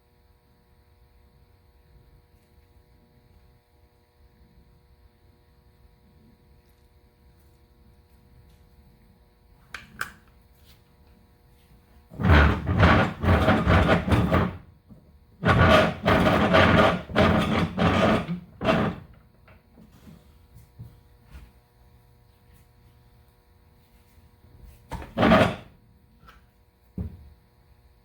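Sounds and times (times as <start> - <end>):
parts knocking and scraping: 12.1 - 14.7, 15.4 - 19.2, 24.9 - 26.4.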